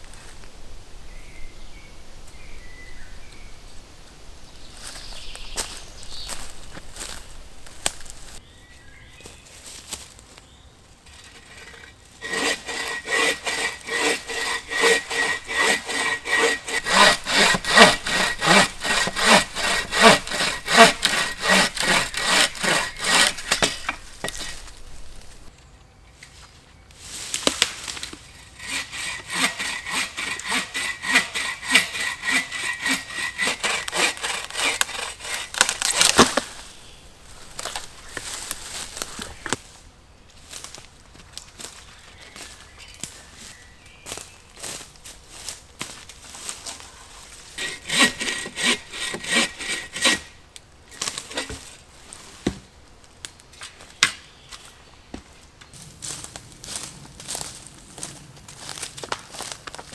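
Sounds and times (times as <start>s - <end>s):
hand saw cutting wood: 11.1s - 25.5s, 28.5s - 39.6s, 47.5s - 51.7s.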